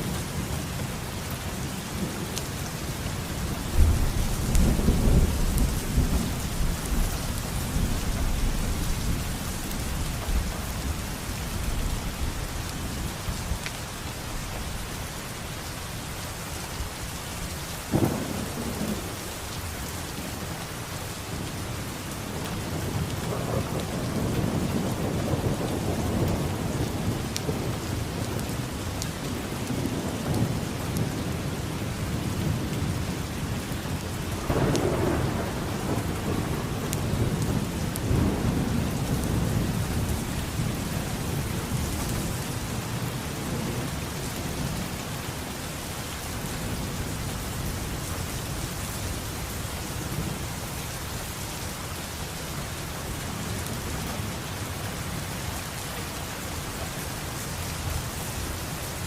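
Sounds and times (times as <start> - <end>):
steady rain: 0.0 - 59.0
thunder rumbling: 3.4 - 12.4, 17.9 - 19.3, 34.4 - 45.6
loud thunderclap: 34.5 - 40.8.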